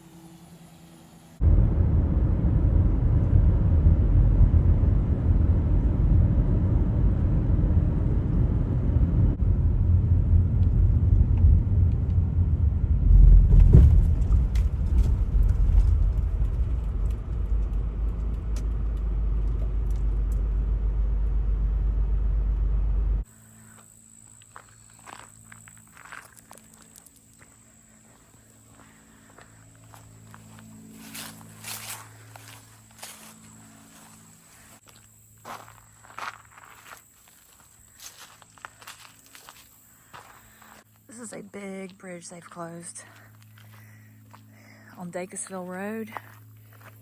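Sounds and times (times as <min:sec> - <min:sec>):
road and wind noise from car: 0:00.4 - 0:23.3.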